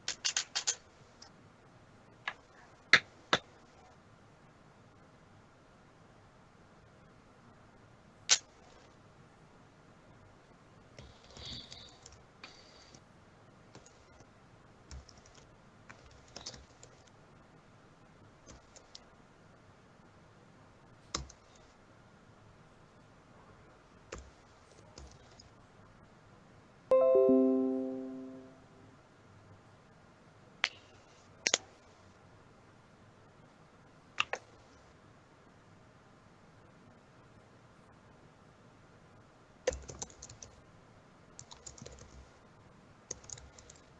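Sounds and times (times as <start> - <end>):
faint room hiss: 0.0 - 43.9
faint clicks and taps: 14.9 - 17.2, 21.1 - 21.7.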